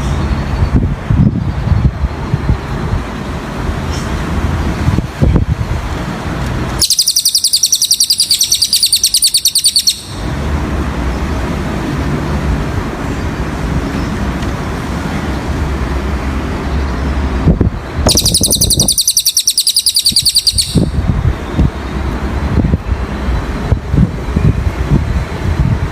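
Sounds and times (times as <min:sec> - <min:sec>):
bird singing a high-pitched trill: 0:06.8 - 0:10.2, 0:18.1 - 0:21.0.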